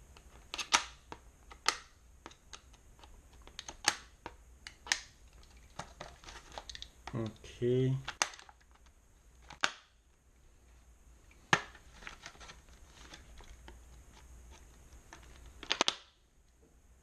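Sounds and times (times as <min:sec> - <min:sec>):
tool and packaging clicks: 0:00.4 - 0:07.4, 0:08.0 - 0:09.9, 0:14.5 - 0:16.1
packaging rustling: 0:05.2 - 0:07.4, 0:11.5 - 0:16.0.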